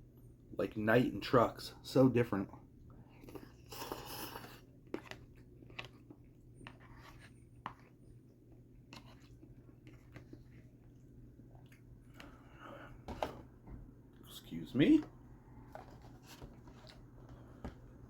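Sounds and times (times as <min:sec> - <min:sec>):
faint chewing: 0:02.9 - 0:12.7, 0:16.5 - 0:17.7.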